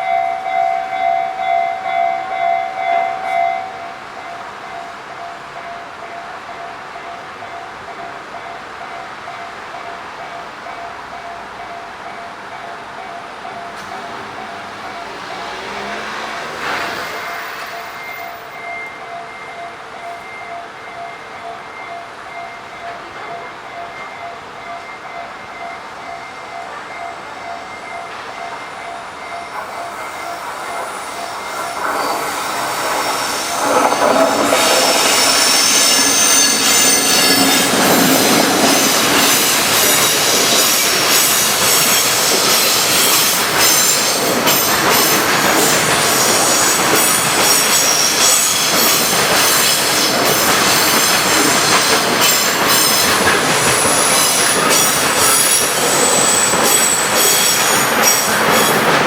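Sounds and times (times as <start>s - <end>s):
freight train passing: 0.0s - 59.0s
level-crossing warning bell: 0.0s - 59.0s
high-pitched wheel squeal: 14.0s - 19.5s, 29.5s - 59.0s.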